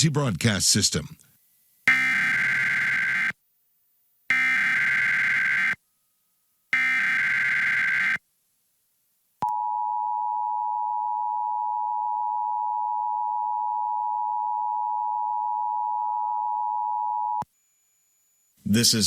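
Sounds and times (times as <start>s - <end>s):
screeching digital data burst: 1.9s - 3.4s, 4.3s - 5.8s, 6.8s - 8.2s
two-tone alarm: 1.9s - 3.4s, 4.3s - 5.8s, 6.7s - 8.2s.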